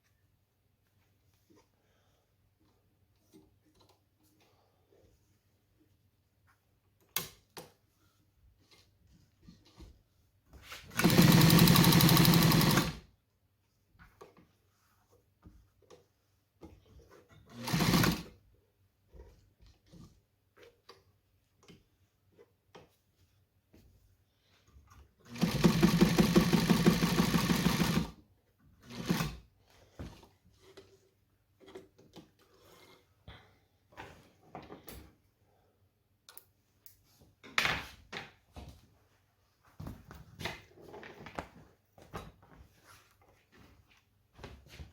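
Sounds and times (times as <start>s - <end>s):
sewing machine stitching: 10.9s - 13.0s, 17.4s - 18.4s, 25.2s - 28.2s, 28.8s - 29.5s.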